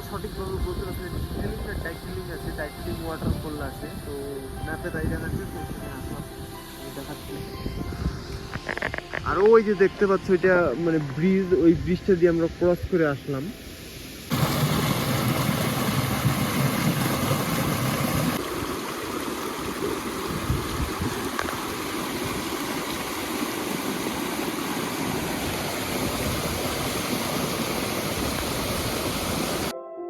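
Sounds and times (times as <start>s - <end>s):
water rushing over rocks: 13.9s - 29.7s.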